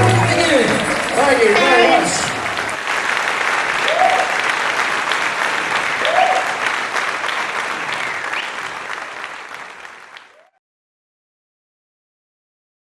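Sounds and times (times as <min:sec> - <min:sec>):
audience applauding: 0:00.0 - 0:10.5.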